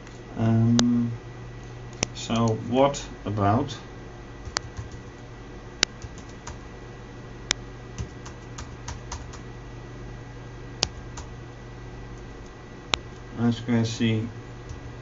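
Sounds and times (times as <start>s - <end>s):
steady low hum: 0.0s - 15.0s
keyboard keystrokes: 5.9s - 6.6s, 8.0s - 9.4s.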